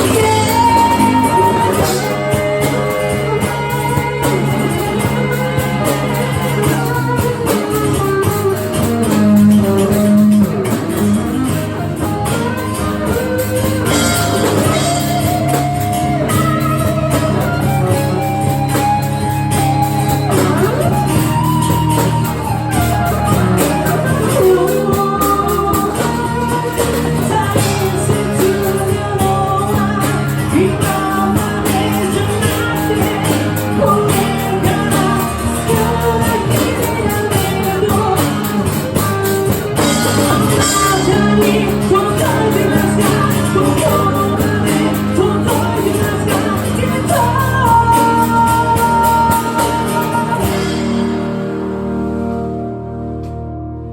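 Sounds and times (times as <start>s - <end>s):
person singing: 0.0s - 51.3s
electric guitar: 0.0s - 53.9s
rock band playing: 0.0s - 53.9s.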